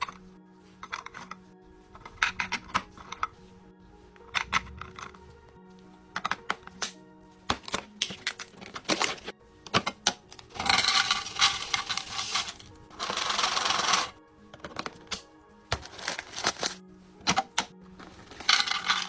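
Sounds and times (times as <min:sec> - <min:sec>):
faint background music: 0:00.0 - 0:19.0
plastic containers clicking: 0:06.1 - 0:19.0.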